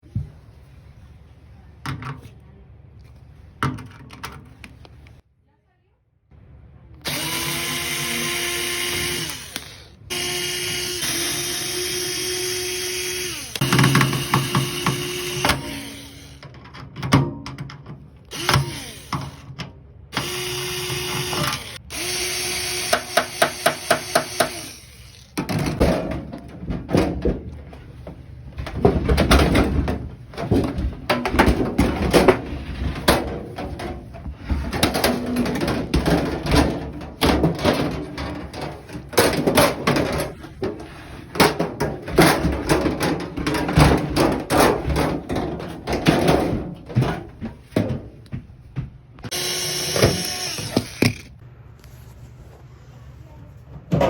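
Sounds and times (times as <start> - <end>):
power drill whine: 7.0 - 16.4, 18.3 - 19.4, 20.1 - 25.3, 49.3 - 51.3
drill clutch clicking: 8.8 - 12.2, 12.9 - 16.4, 18.3 - 19.5, 20.2 - 25.4, 49.3 - 51.4
metal parts clattering: 28.8 - 46.5.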